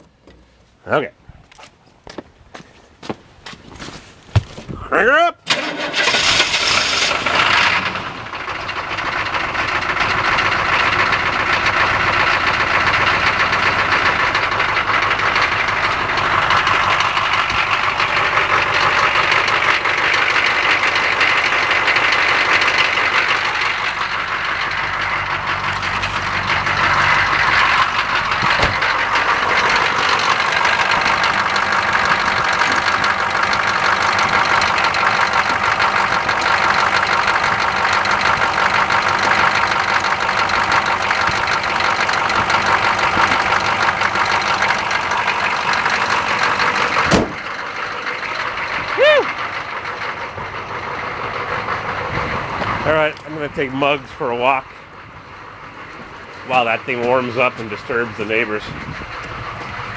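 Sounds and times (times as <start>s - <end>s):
diesel engine running: 4.4s - 59.9s.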